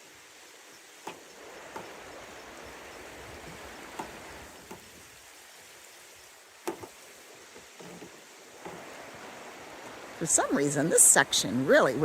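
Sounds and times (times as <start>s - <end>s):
mountain stream rushing: 0.0s - 12.0s
faint knocks: 1.0s - 2.0s, 3.4s - 4.9s, 6.6s - 8.9s.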